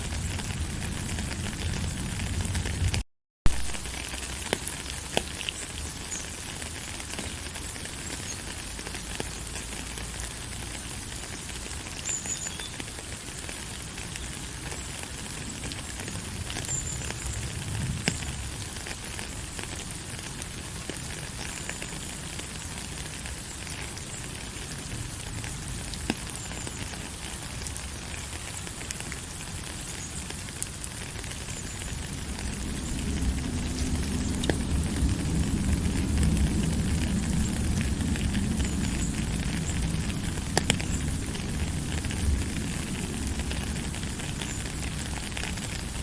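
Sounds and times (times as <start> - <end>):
steady rain falling: 0.0 - 46.0.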